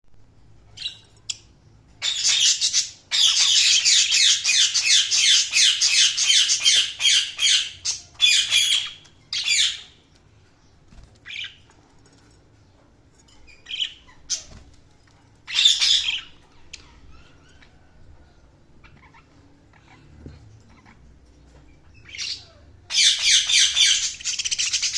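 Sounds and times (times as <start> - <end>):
budgerigar chirping and chattering: 2.0 - 10.0, 15.5 - 17.8, 21.9 - 24.9.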